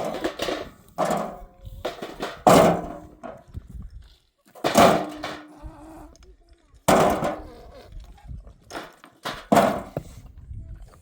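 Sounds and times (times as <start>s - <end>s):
heavy stone thuds: 9.3s - 10.2s.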